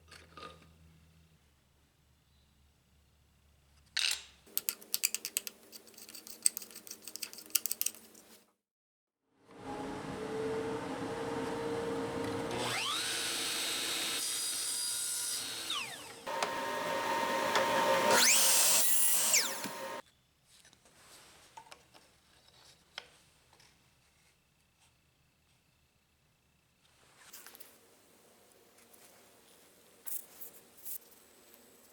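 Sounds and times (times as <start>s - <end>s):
router cutting wood: 9.7s - 20.0s.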